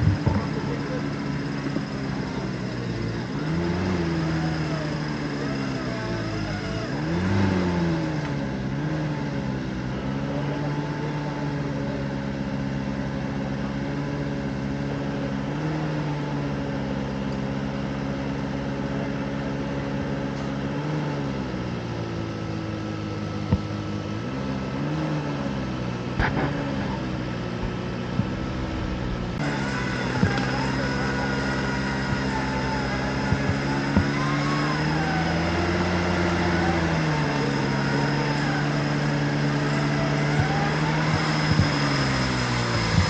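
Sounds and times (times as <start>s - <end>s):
sharp knocks: 0.0s - 0.6s
engine revving: 0.0s - 43.0s.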